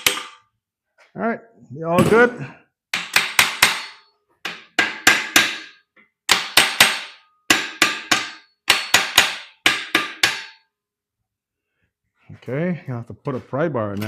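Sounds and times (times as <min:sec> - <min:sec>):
hammer tapping metal: 0:00.0 - 0:00.4, 0:02.9 - 0:10.6.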